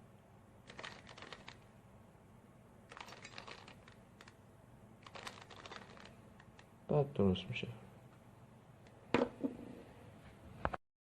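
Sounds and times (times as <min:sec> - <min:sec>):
plastic cube clicking: 0:00.7 - 0:01.6, 0:02.9 - 0:04.4, 0:05.0 - 0:06.7.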